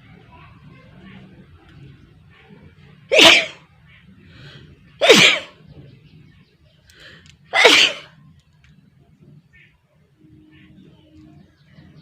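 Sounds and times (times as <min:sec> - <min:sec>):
person sneezing: 0:03.1 - 0:03.6, 0:05.0 - 0:05.6, 0:07.6 - 0:08.1
faint in-breath: 0:04.2 - 0:04.8, 0:06.9 - 0:07.5.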